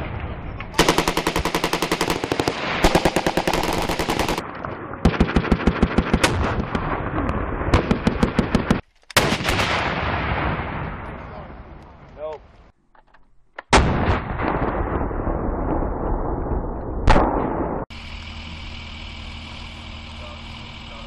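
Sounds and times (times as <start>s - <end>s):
automatic machine-gun fire: 0.8s - 4.4s, 5.1s - 6.6s.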